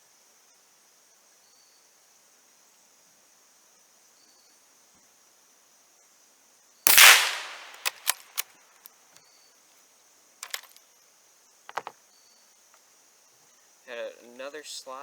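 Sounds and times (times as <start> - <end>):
rifle action clattering: 6.9 - 8.4, 10.4 - 10.8, 11.7 - 11.9
rifle bolt clicking: 6.9 - 8.4, 10.4 - 10.7
rifle shot: 6.9 - 8.4.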